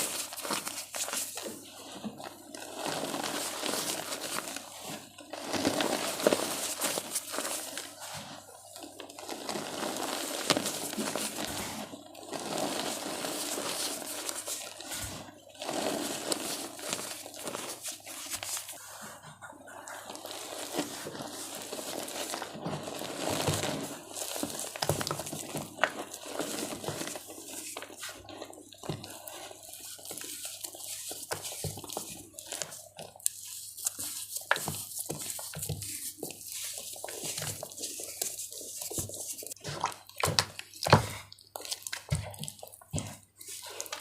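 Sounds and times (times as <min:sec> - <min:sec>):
wet chalk crunching by hand: 0:09.0 - 0:19.0, 0:20.0 - 0:44.0.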